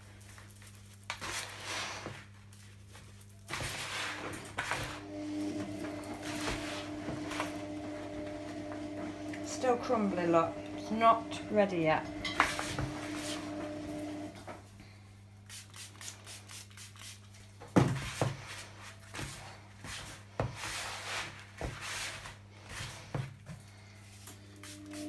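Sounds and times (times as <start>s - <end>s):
hands rubbing powdery mix: 15.4s - 17.4s.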